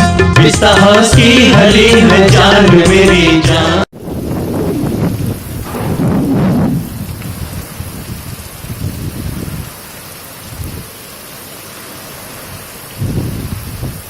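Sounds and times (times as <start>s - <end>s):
low rumbling: 4.0s - 8.6s
heavy rain hissing: 4.0s - 14.0s.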